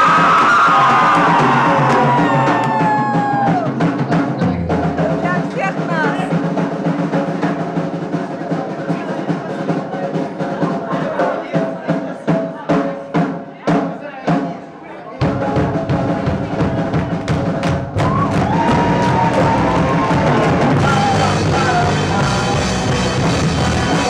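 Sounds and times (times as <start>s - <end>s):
live band music: 0.0s - 9.1s, 15.2s - 24.0s
drum kit hits: 15.2s - 24.0s.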